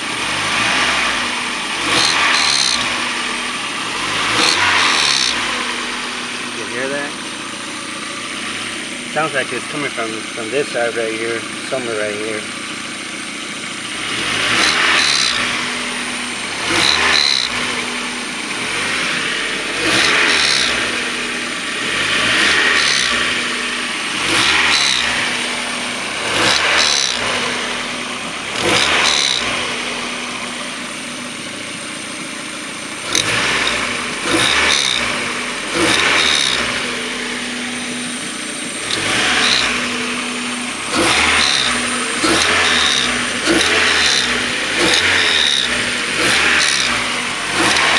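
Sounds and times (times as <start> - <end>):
car engine revving: 0.0 - 47.9
engine rotating noise: 0.0 - 47.9.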